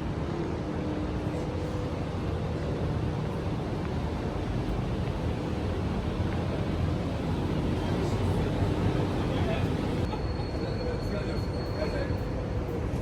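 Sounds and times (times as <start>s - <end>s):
city traffic rumble: 0.0s - 10.1s.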